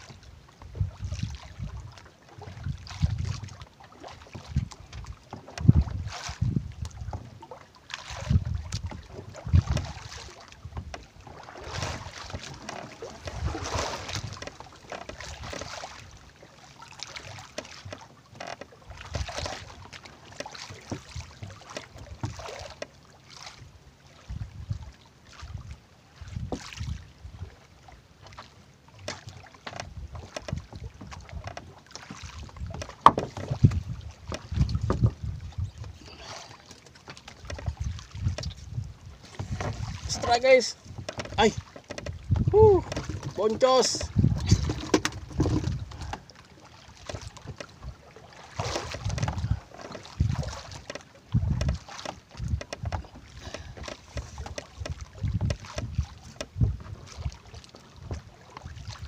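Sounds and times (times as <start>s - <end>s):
water sloshing against hull: 0.0s - 59.0s
wind on microphone: 0.1s - 3.6s, 4.2s - 7.4s, 8.1s - 14.6s, 24.3s - 27.5s, 32.3s - 36.5s, 37.4s - 46.2s, 48.6s - 57.4s
knocks and clicks from handling: 44.6s - 45.8s.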